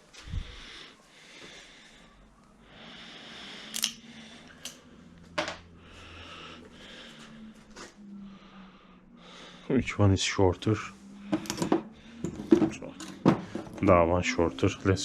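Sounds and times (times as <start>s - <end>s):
sharp clicks: 3.7s - 4.0s.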